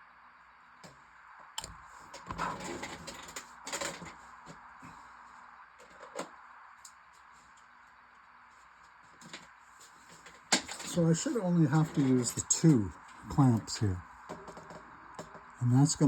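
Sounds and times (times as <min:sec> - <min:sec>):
plastic parts clattering: 0:02.2 - 0:04.2, 0:10.1 - 0:11.0.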